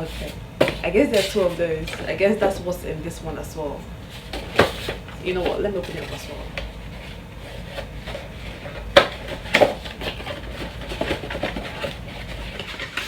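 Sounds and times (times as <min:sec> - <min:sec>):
packaging tapping and rustling: 0:00.0 - 0:02.6, 0:04.0 - 0:13.0.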